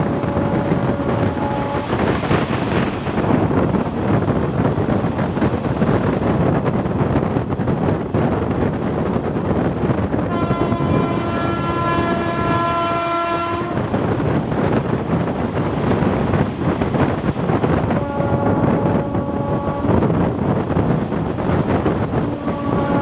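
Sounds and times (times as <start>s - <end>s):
rumble and clatter of train coach: 0.0s - 23.0s
locomotive horn blasts: 0.1s - 2.0s, 10.2s - 13.9s, 18.0s - 20.0s, 22.3s - 23.0s.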